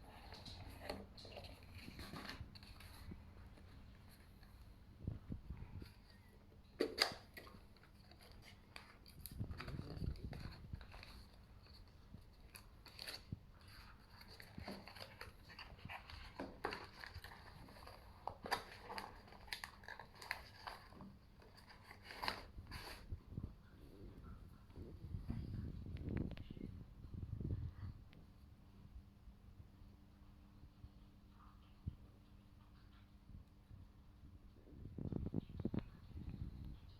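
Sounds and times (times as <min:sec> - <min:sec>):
packaging rustling: 0:05.1 - 0:23.1.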